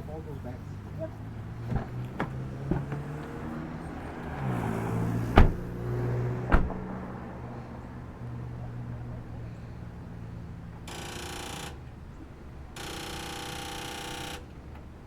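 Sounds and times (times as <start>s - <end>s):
car engine idling: 0.0s - 15.0s
sharp knocks: 6.5s - 6.9s.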